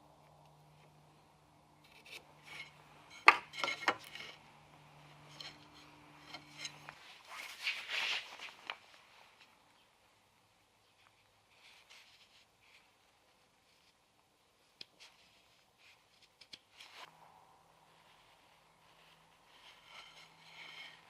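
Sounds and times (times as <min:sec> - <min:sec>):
low steady hum: 0:00.0 - 0:21.0
hand tool scraping wood: 0:01.9 - 0:08.2, 0:19.6 - 0:21.0.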